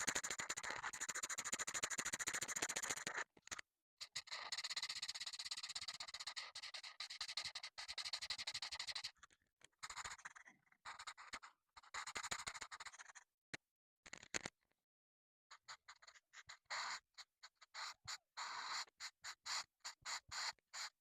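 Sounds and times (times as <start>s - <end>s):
coloring strokes scratching paper: 9.8s - 13.3s, 15.6s - 21.0s.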